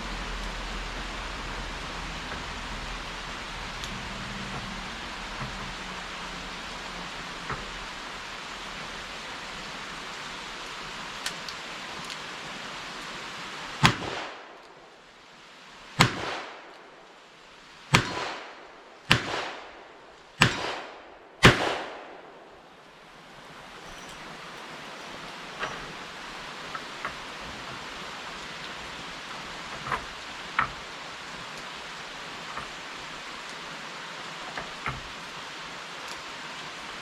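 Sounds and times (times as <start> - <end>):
revolver gunshots with echo: 19.1 - 19.8.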